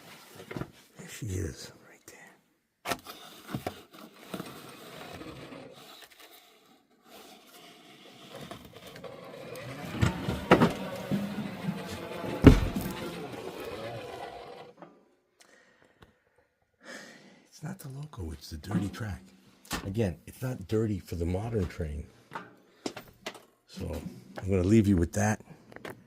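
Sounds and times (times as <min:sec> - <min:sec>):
model train motor whirring: 0:03.9 - 0:14.8
wheels clattering on rails: 0:09.1 - 0:14.7.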